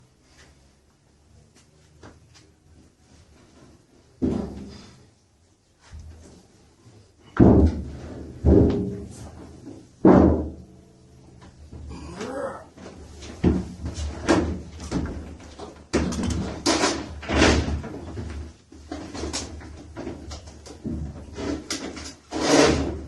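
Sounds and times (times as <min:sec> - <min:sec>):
knocks and bangs: 0:07.4 - 0:09.2, 0:10.0 - 0:11.0.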